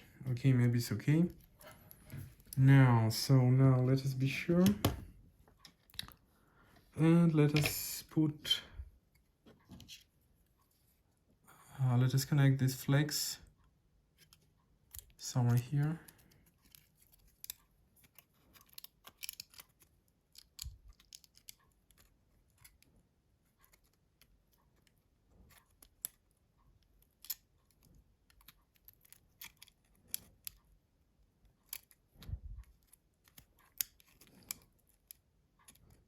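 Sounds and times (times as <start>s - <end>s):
small clicks and taps of phone parts: 4.6s - 6.2s, 14.2s - 30.8s, 31.4s - 36.0s.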